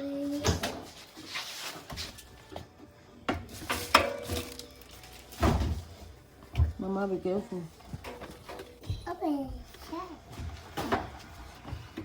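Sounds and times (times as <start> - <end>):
washing machine knocks and thumps: 5.4 - 7.0.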